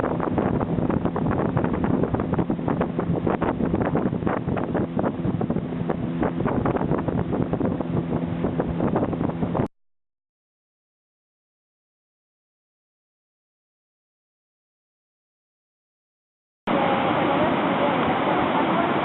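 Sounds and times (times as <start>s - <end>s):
wind buffeting microphone: 0.0s - 9.7s.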